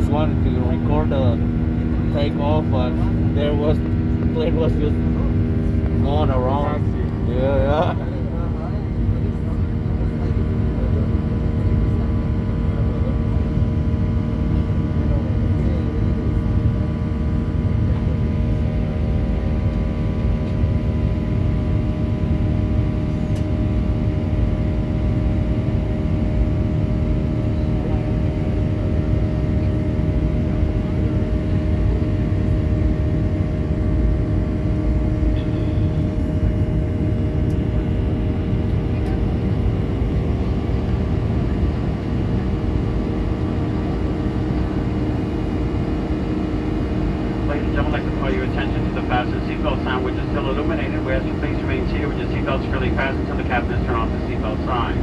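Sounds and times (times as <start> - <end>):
jet engines rumbling in cabin: 0.0 - 55.0
faint steady hum: 31.9 - 55.0.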